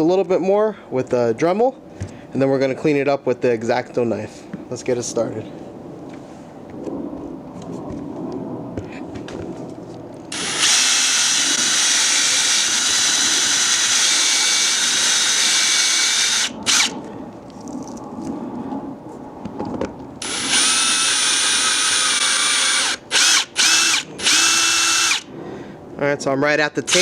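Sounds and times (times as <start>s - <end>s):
power drill spinning: 10.3s - 17.0s, 20.2s - 25.3s.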